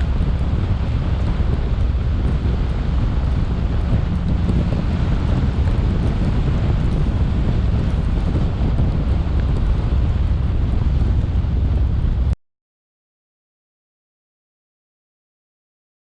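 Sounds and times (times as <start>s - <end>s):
wind buffeting microphone: 0.0s - 12.4s.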